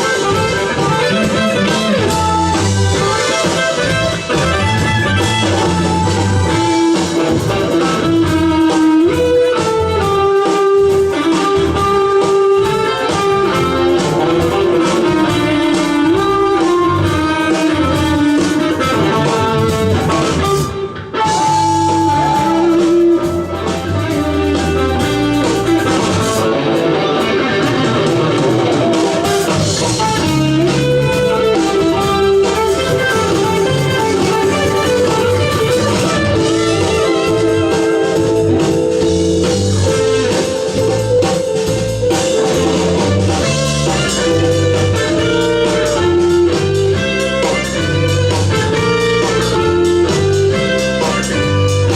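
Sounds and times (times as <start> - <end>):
live band playing fusion: 0.0 - 51.9.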